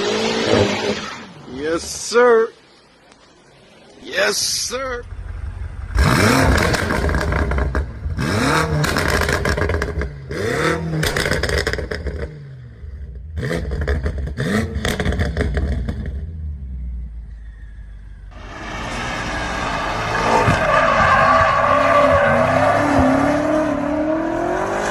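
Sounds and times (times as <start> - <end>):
car engine revving: 5.0 - 17.0, 18.3 - 24.9
exhaust crackles and pops: 5.9 - 10.2, 13.5 - 16.3.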